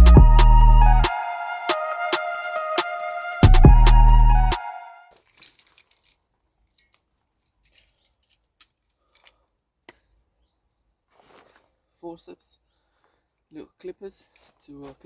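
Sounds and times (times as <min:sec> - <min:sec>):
soft rustle: 0:05.1 - 0:15.0.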